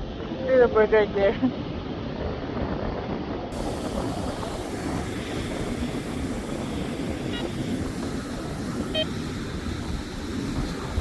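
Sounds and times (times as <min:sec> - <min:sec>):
wind on microphone: 0:00.0 - 0:11.0
waves washing at shore: 0:03.5 - 0:11.0.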